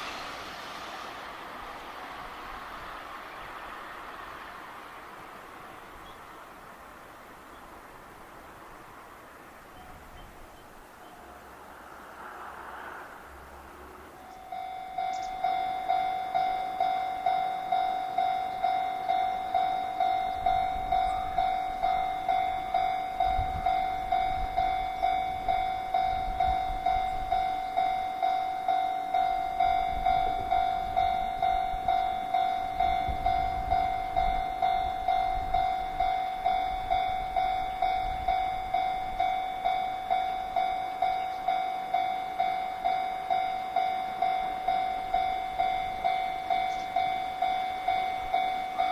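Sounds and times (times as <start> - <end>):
level-crossing alarm clanging: 14.2 - 48.9.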